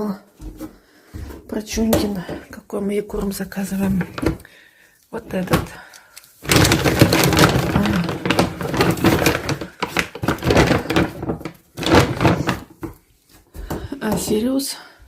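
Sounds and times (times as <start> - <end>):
dog food bag rustling: 6.4 - 12.8.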